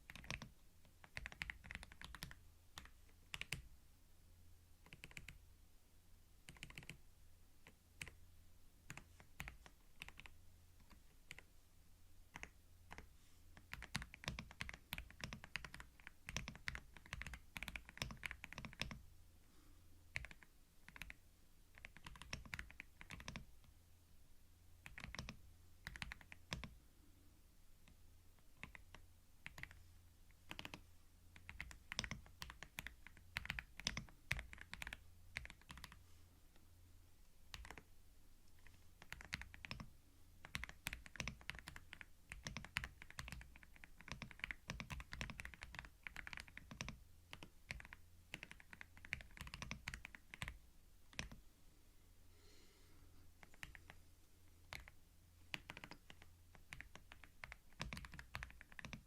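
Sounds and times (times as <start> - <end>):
computer keyboard typing: 0.1 - 3.7, 4.8 - 5.4, 6.5 - 7.0, 7.6 - 8.2, 8.9 - 11.5, 12.3 - 19.0, 20.1 - 21.2, 21.8 - 23.5, 24.8 - 26.8, 27.8 - 36.0, 37.5 - 37.9, 38.5 - 51.4, 53.4 - 54.0, 54.6 - 59.0.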